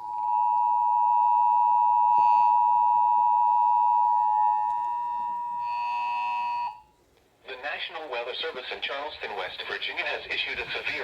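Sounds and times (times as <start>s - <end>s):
two-tone alert signal: 0.2s - 6.8s.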